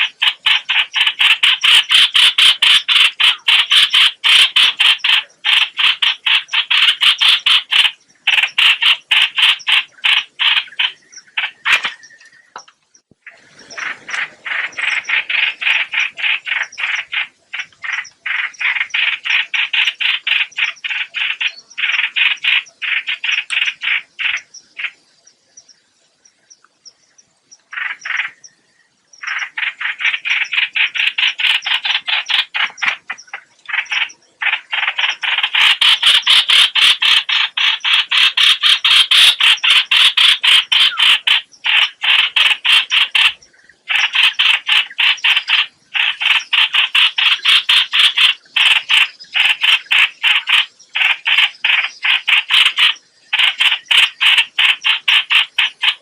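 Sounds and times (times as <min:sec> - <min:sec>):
bird calling harsh rapid notes: 0:00.0 - 0:12.6, 0:29.2 - 0:56.0.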